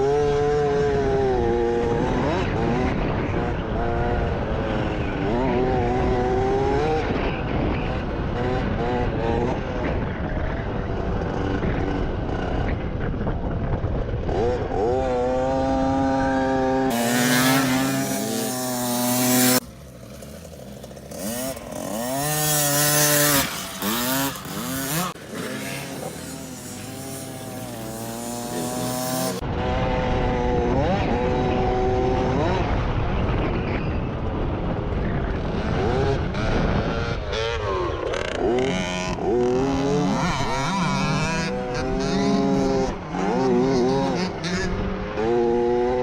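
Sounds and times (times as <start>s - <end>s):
dirt bike engine revving: 0.0s - 13.2s, 13.9s - 46.0s
wind hiss: 14.3s - 19.6s.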